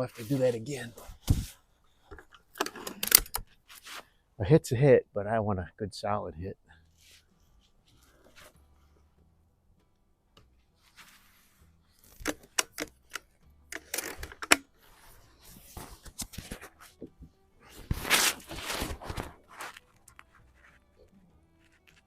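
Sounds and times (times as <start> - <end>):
air rifle mechanical clicks: 2.2 - 3.5, 12.1 - 14.7.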